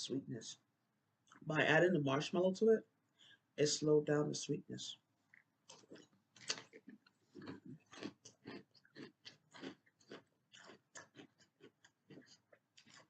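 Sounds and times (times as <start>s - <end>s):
person chewing crunchy cereal: 5.3s - 13.0s.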